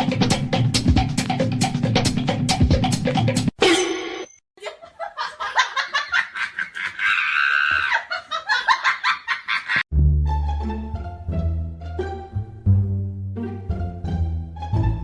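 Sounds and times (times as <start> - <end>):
person laughing hard: 4.6 - 9.8
music with low plucked strings: 9.9 - 15.0.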